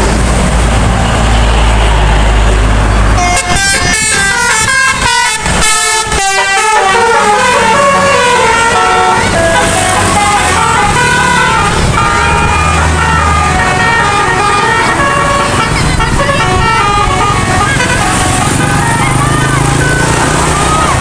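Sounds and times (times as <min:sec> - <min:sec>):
bus engine running: 0:00.0 - 0:21.0
musical air horn melody: 0:03.2 - 0:21.0.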